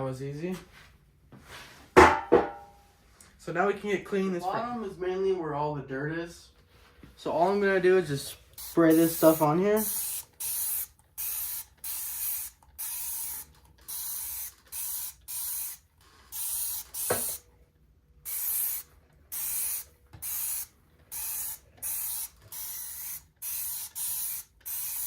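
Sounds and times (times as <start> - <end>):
spray bottle squirting: 8.5 - 17.4, 18.2 - 25.0.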